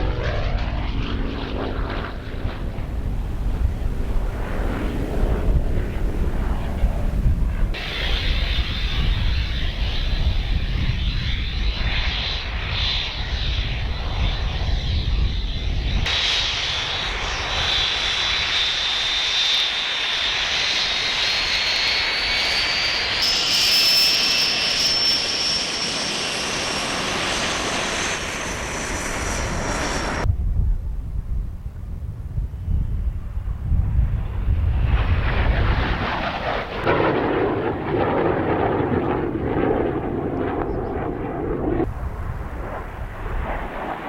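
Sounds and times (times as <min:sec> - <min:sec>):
wind rumble on microphone: 0:00.0 - 0:18.5, 0:28.8 - 0:44.0
aircraft engine whine: 0:00.0 - 0:44.0.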